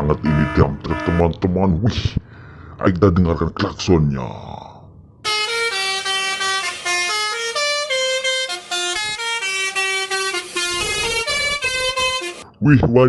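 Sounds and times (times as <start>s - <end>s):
musical truck horn playing tune: 0.0s - 1.4s, 5.3s - 12.4s.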